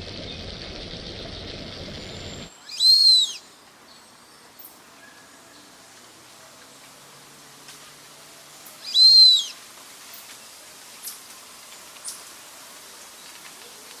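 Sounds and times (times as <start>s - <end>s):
duck whistled call: 2.7s - 3.4s, 8.9s - 9.5s.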